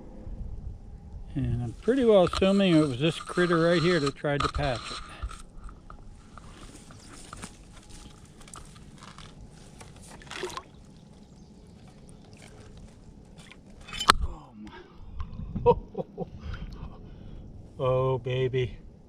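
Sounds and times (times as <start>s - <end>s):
water sloshing and dripping: 6.6s - 14.1s.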